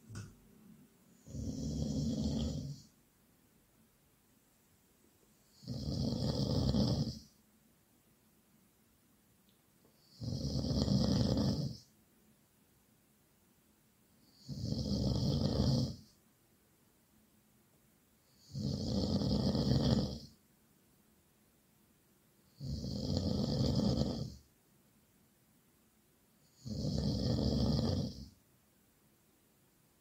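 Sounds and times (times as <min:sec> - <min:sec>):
loud snoring: 0:01.2 - 0:02.9, 0:05.5 - 0:07.3, 0:10.0 - 0:11.9, 0:14.3 - 0:16.1, 0:18.3 - 0:20.4, 0:22.5 - 0:24.4, 0:26.4 - 0:28.4.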